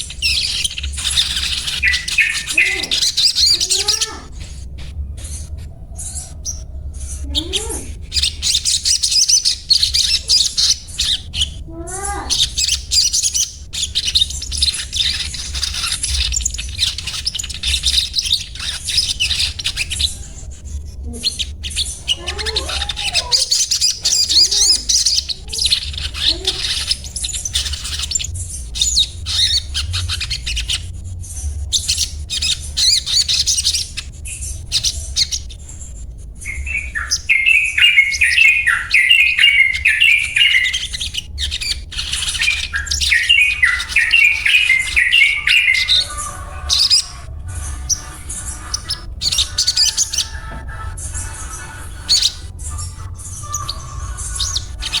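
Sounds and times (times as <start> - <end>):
bird twittering chatter: 0.0 - 55.0
bird sharp repeated notes: 36.4 - 55.0.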